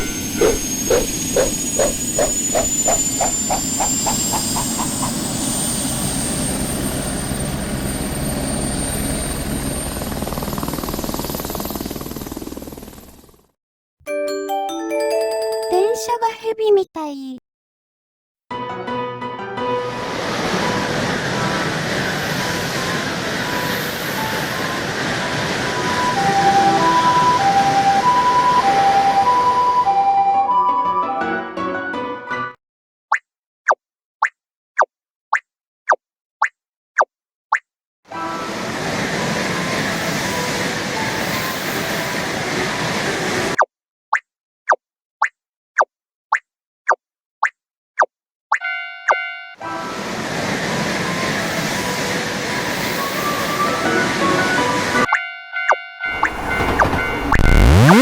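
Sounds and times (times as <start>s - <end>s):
passing train rumble: 20.0s - 29.8s, 38.2s - 43.5s, 49.6s - 55.1s, 56.1s - 58.0s
two-tone ambulance siren: 25.6s - 31.2s, 55.1s - 58.0s
railroad crossing bell ringing: 55.1s - 57.9s.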